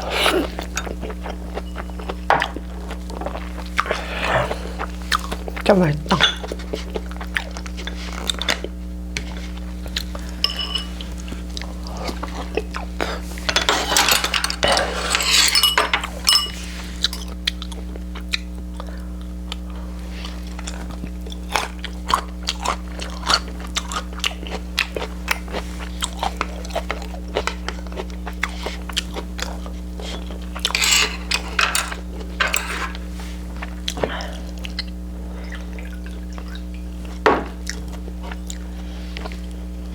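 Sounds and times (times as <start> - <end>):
low electrical hum: 0.0 - 39.9
person chewing and crunching food: 0.0 - 39.9
utensils clicking on dishes: 10.4 - 11.0, 13.4 - 17.3, 30.1 - 33.0.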